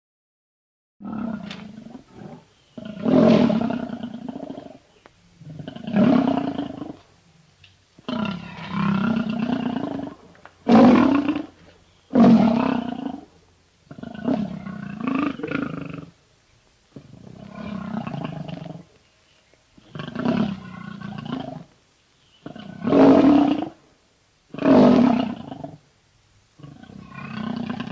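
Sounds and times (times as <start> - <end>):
large animal roaring: 1.0 - 4.8, 5.4 - 7.0, 8.1 - 11.5, 12.1 - 13.3, 17.0 - 18.9, 19.8 - 21.7.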